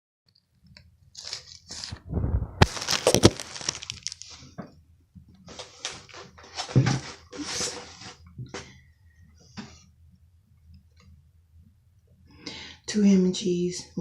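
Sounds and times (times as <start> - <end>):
handling rustles: 1.2 - 4.5.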